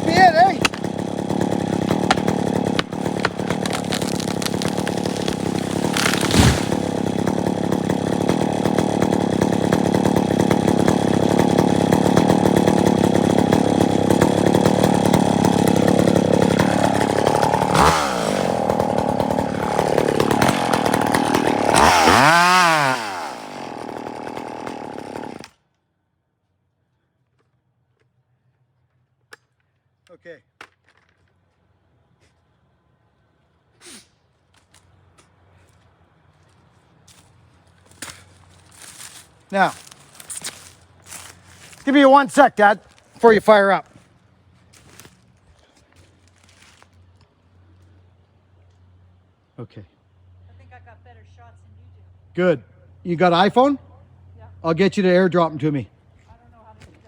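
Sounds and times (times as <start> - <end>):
chainsaw cutting into tree: 0.0 - 25.7, 37.1 - 44.0.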